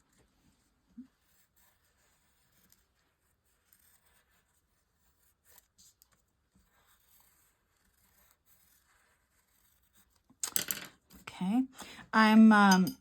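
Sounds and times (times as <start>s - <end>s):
pencil scratching on paper: 0.0s - 10.3s.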